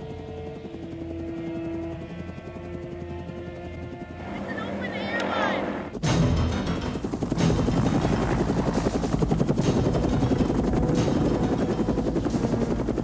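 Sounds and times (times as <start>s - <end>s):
helicopter rotor chopping: 0.0s - 13.0s.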